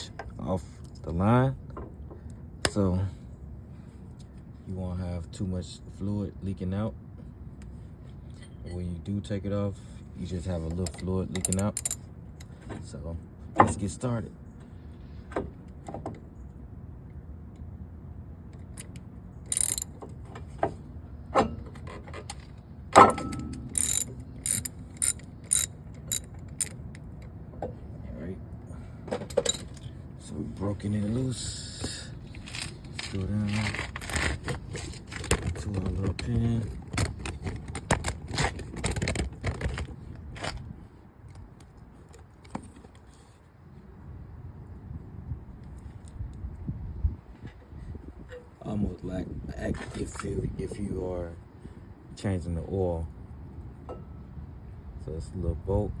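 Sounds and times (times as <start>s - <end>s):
socket ratchet clicking: 10.8s - 12.0s, 18.7s - 20.0s, 23.3s - 27.0s.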